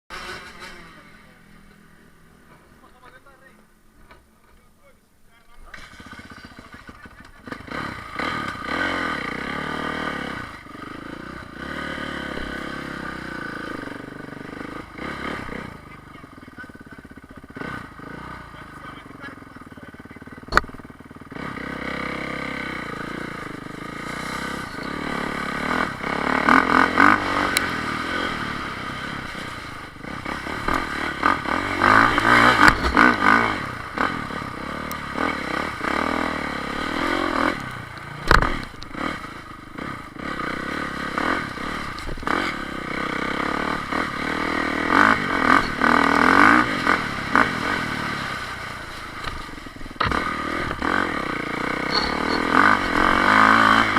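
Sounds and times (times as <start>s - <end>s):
motorcycle engines revving: 0.1s - 4.9s, 5.5s - 53.9s
sharp knocks: 20.5s - 20.8s.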